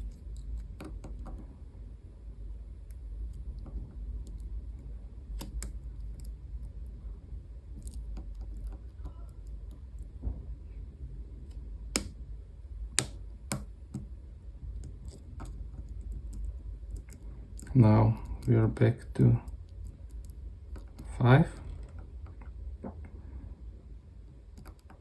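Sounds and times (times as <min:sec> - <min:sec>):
lock picking metallic clicks: 0:05.3 - 0:06.4, 0:12.9 - 0:14.1.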